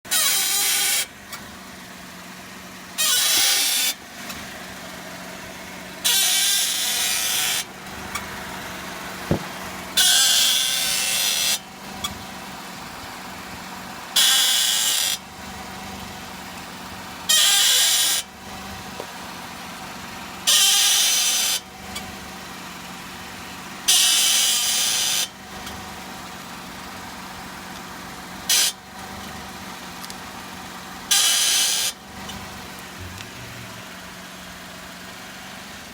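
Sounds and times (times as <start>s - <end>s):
ball joint squeaking: 0.1s - 1.1s, 3.0s - 4.0s, 6.0s - 8.3s, 9.3s - 12.2s, 17.3s - 18.3s
steady low hum: 32.5s - 34.8s.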